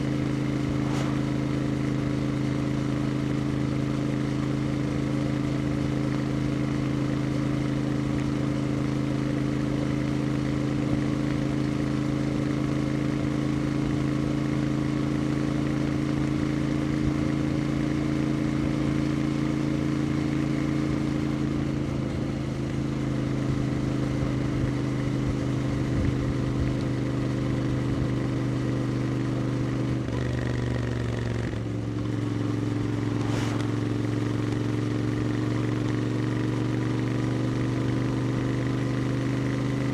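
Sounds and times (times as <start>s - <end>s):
motorcycle engine cruising: 0.0s - 5.0s, 15.6s - 39.9s.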